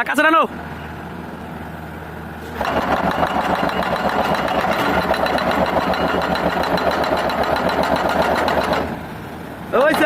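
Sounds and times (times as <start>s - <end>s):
excavator engine running: 0.5s - 10.0s
hydraulic breaker hammer pounding: 2.5s - 9.1s, 9.7s - 10.0s.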